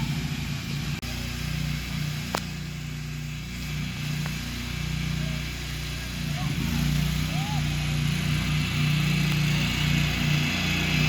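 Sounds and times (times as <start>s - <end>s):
riding mower engine loping: 0.0s - 11.0s.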